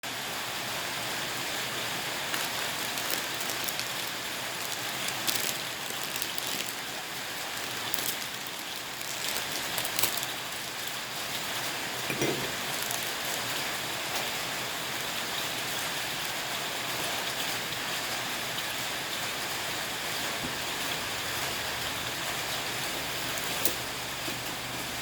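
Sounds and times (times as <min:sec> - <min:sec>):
meat grinder crunching noodles: 0:01.9 - 0:11.7, 0:12.5 - 0:14.4.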